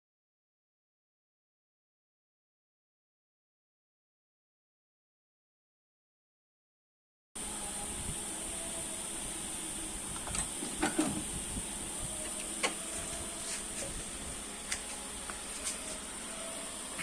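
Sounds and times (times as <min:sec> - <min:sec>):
steady high-pitched hiss: 0:07.4 - 0:17.0.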